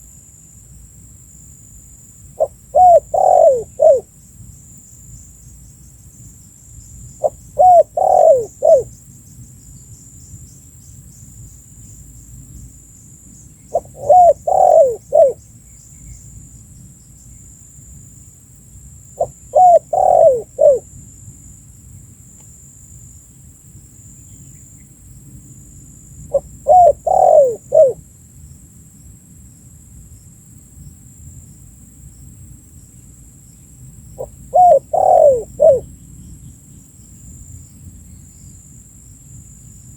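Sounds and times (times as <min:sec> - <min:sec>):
dove cooing: 0:02.4 - 0:04.1, 0:07.2 - 0:08.9, 0:13.7 - 0:15.4, 0:19.2 - 0:20.8, 0:26.3 - 0:28.0, 0:34.2 - 0:35.9.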